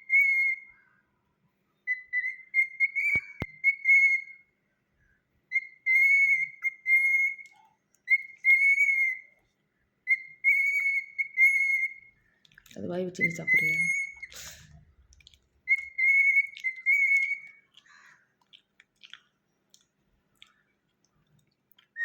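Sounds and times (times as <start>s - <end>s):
cockatiel whistling a tune: 0.0s - 0.8s, 1.8s - 4.5s, 5.5s - 7.5s, 8.1s - 9.3s, 10.0s - 12.1s, 13.2s - 14.5s, 15.7s - 17.6s.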